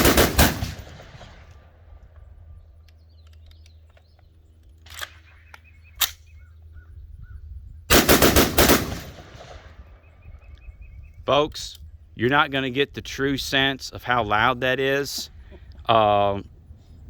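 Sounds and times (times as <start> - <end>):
rifle gunshots: 0.0 - 1.9, 7.9 - 10.0.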